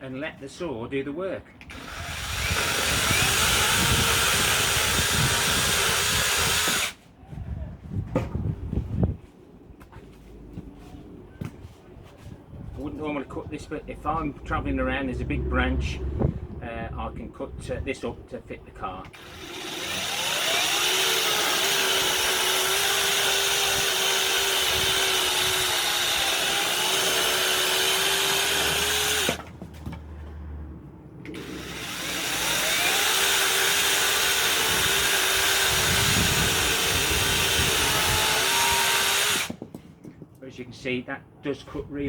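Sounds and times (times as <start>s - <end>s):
electric chainsaw cutting branch: 1.7s - 7.0s, 19.1s - 29.5s, 31.3s - 39.6s.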